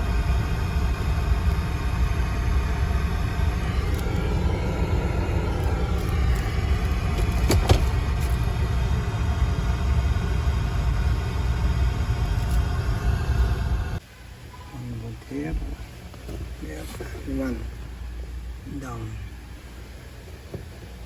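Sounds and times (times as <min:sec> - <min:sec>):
car engine idling: 0:00.0 - 0:14.3.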